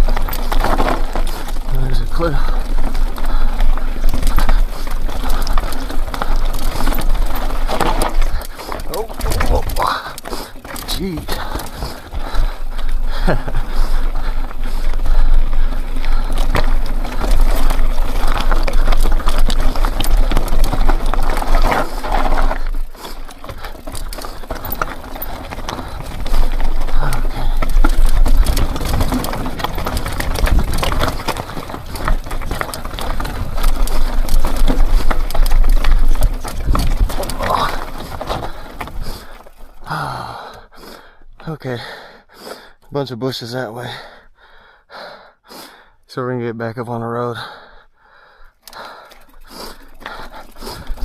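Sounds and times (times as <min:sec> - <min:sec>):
bike tyres crunching on dirt: 0:00.0 - 0:41.1, 0:48.6 - 0:51.0
bike rattling: 0:00.0 - 0:41.2, 0:47.3 - 0:51.0
wind rumble on microphone: 0:25.5 - 0:39.1.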